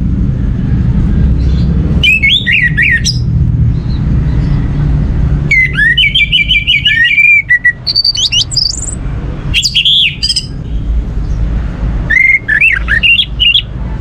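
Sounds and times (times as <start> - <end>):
steady low rumble: 0.0 - 6.9
thrush singing: 0.0 - 10.6, 12.0 - 14.0.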